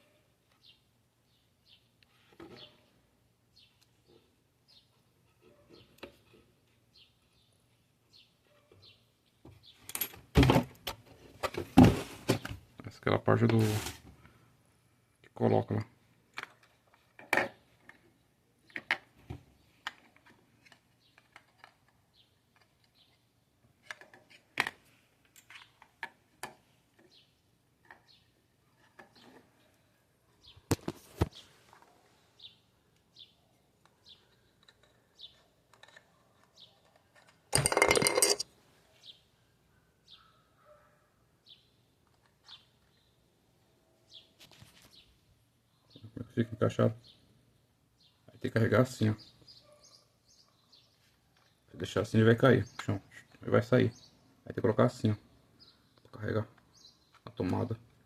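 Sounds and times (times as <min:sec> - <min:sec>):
bird chirping: 0:00.0 - 0:10.0, 0:27.0 - 0:37.3, 0:37.9 - 0:58.0
small objects clicking and knocking: 0:36.8 - 0:38.5.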